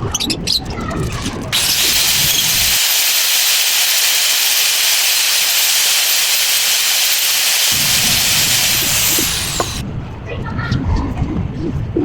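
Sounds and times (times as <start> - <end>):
spraying gas hiss: 1.6 - 9.8.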